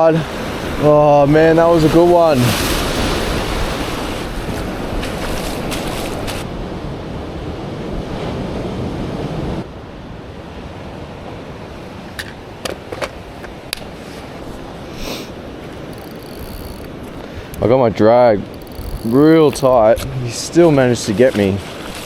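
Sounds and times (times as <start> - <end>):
surf washing against rocks: 0.0 - 9.7, 10.6 - 22.0
wind buffeting microphone: 0.4 - 9.7, 10.5 - 22.0
sharp clicks: 15.8 - 17.7, 18.4 - 20.0.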